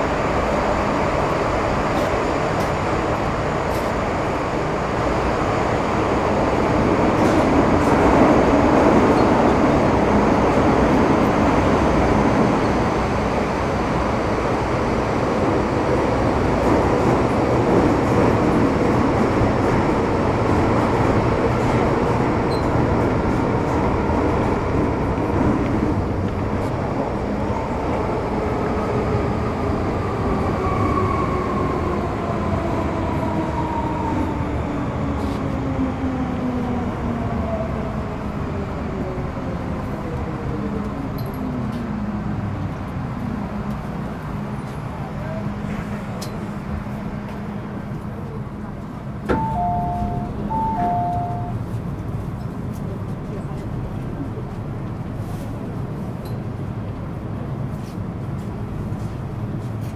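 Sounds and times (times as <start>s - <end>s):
train rumble in tunnel: 0.0s - 59.9s.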